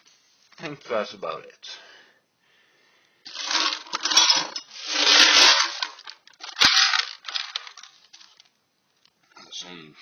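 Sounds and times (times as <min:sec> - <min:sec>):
metal hardware clinking and rattling: 0:03.3 - 0:08.4.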